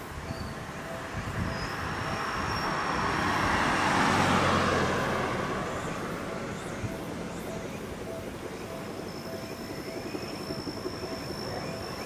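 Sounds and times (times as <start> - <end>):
train wheels and motors rumbling: 0.0 - 12.0
thin high whine: 5.7 - 12.0.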